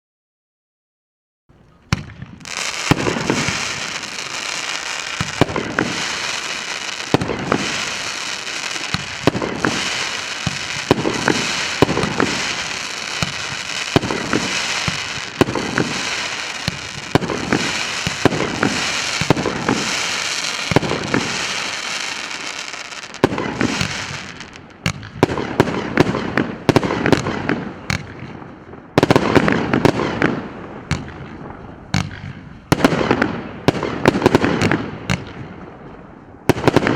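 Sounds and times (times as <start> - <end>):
firework shots thumping: 1.9 - 28.4, 29.0 - 35.5
firework crackle: 2.0 - 27.4.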